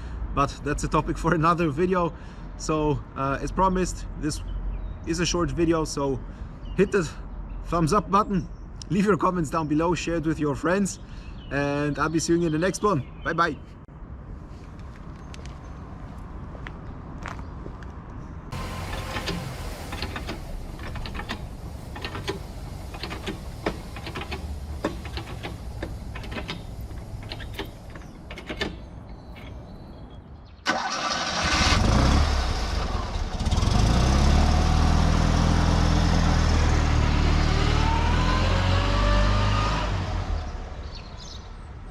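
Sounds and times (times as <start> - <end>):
small engine cranking and running: 18.6 - 29.5
scattered clicks and knocks: 18.9 - 29.7.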